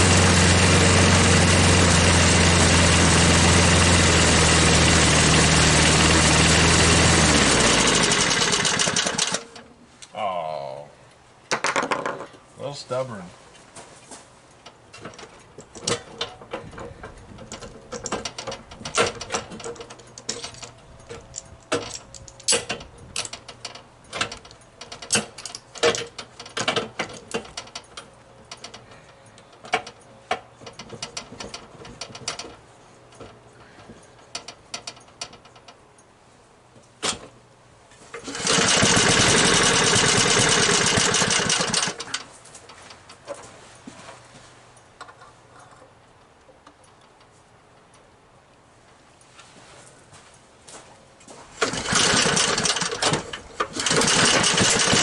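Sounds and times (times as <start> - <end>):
small mower engine running fast: 0.0 - 9.4, 38.2 - 42.2, 51.6 - 55.0
metallic clicks and knocks of tools: 14.6 - 36.1.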